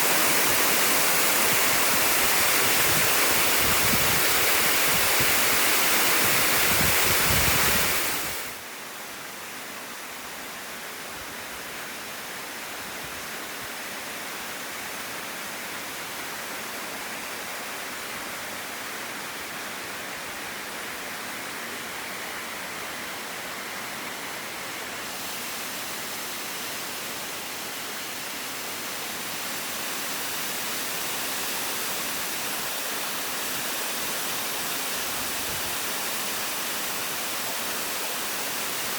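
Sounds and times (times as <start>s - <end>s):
waterfall rushing: 0.0s - 8.6s, 17.6s - 38.9s.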